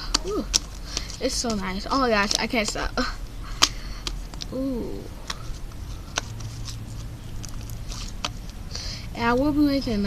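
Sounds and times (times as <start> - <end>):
person saying ooh: 4.5 - 5.1
slime being squished by hand: 5.2 - 8.7.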